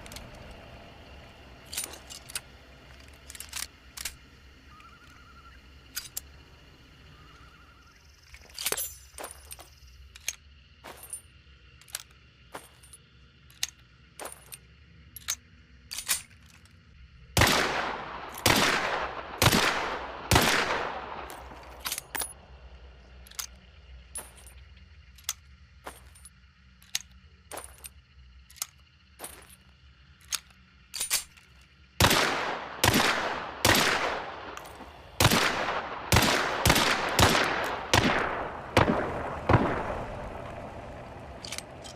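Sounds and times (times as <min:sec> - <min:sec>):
pistol dry clicks: 0:01.7 - 0:04.3
gunshots with ringing: 0:17.3 - 0:22.4, 0:32.0 - 0:41.9.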